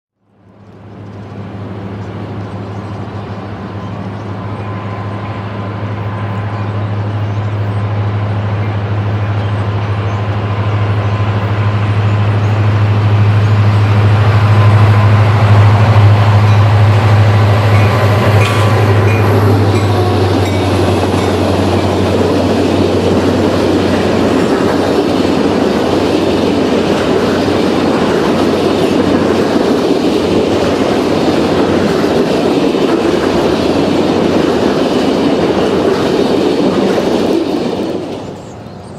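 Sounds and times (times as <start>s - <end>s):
diesel locomotive engine drone: 0.2s - 38.9s
train wheels clattering on rails: 8.5s - 38.9s.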